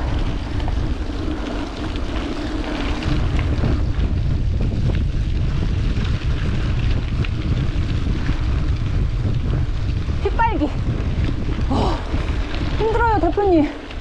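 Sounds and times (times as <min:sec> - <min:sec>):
wind rumbling on microphone: 0:00.0 - 0:14.0.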